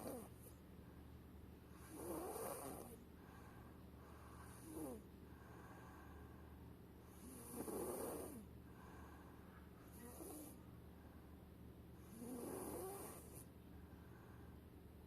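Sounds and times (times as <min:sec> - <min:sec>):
child snoring softly: 0:00.0 - 0:00.6, 0:01.7 - 0:06.4, 0:07.0 - 0:10.7, 0:12.0 - 0:13.5.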